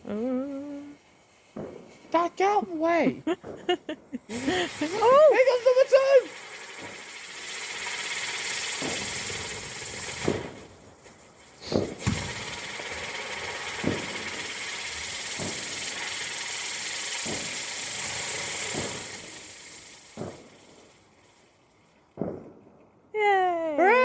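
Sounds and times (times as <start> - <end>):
firework hissing: 0.0 - 22.4
firework shots thumping: 1.4 - 5.5, 7.8 - 20.7, 22.1 - 22.6.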